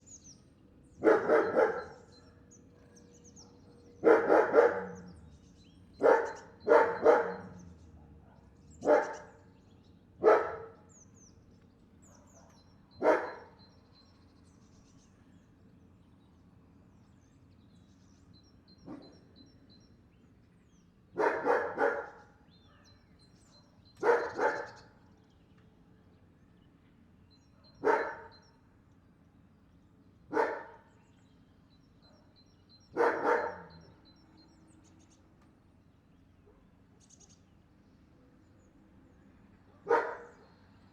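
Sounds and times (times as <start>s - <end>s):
dog barking: 1.0s - 2.1s, 2.8s - 5.1s, 6.0s - 9.4s, 10.2s - 10.8s, 12.0s - 13.6s, 18.8s - 19.2s, 21.2s - 22.9s, 23.6s - 24.9s, 27.6s - 28.4s, 30.3s - 30.9s, 32.1s - 33.9s, 39.7s - 40.4s.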